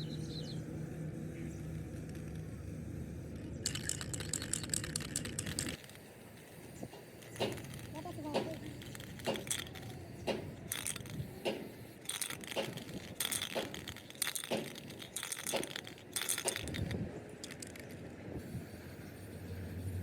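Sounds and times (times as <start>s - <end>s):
low background hum: 0.0s - 20.0s
metal tapping and clinking: 7.2s - 17.8s.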